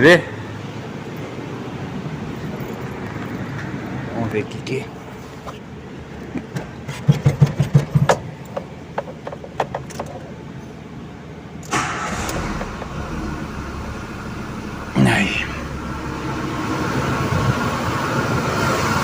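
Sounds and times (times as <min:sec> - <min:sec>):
car engine cranking and starting: 0:11.6 - 0:19.0
steady rush: 0:12.0 - 0:19.0.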